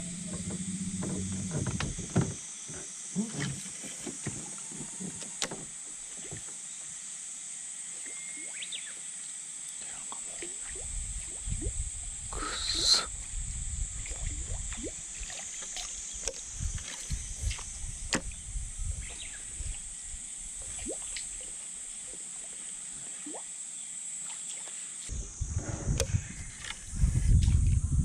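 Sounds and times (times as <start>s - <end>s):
water sloshing and splashing: 0.0s - 6.6s, 14.0s - 18.3s.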